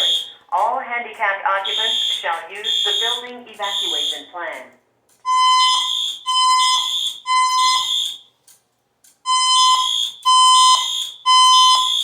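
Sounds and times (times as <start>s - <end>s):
electronic alarm beeps: 0.0s - 0.6s, 1.6s - 4.4s, 5.2s - 8.4s, 9.3s - 12.0s
recorded evacuation message: 0.0s - 5.9s.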